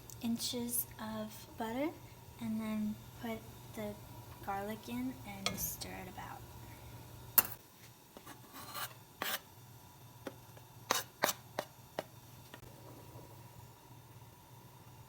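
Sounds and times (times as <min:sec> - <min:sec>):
faint steady hum: 0:00.0 - 0:15.0
utensil scraping and knocking pan: 0:08.2 - 0:09.5.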